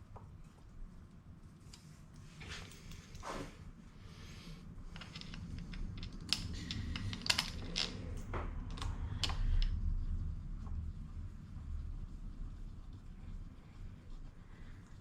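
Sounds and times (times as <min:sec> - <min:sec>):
low handling rumble: 0:04.7 - 0:13.5
tools clicking and scraping on tyre: 0:04.8 - 0:09.8.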